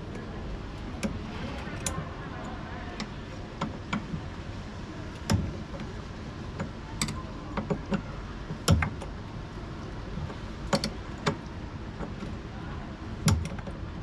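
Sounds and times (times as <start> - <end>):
low background noise: 0.0 - 14.0
tools clicking and knocking: 10.2 - 12.2.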